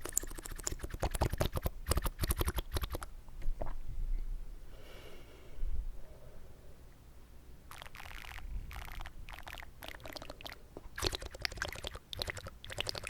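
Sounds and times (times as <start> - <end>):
wet mouth clicks and smacks: 0.0 - 3.1, 7.7 - 13.0
soft slurp: 7.7 - 13.0.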